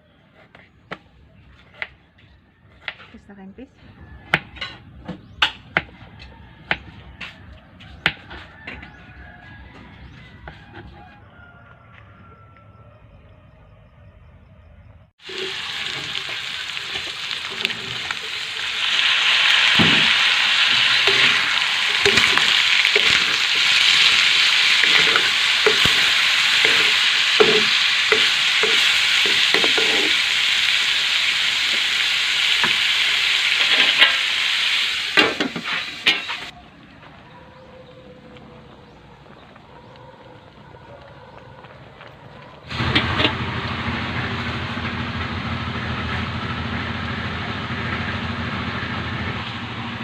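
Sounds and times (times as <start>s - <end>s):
food sizzling in oiled pan: 15.2s - 36.5s, 42.7s - 49.9s
spatula scraping pan: 15.4s - 34.5s, 35.1s - 36.5s.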